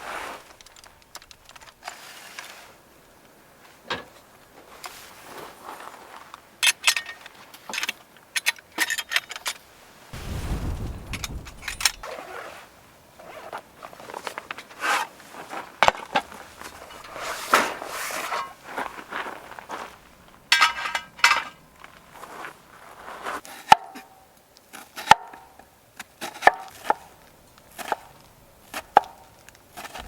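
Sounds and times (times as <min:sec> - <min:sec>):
handling clicks and rustles: 0:00.2 - 0:02.5, 0:11.0 - 0:12.1
low rumble: 0:10.2 - 0:12.1.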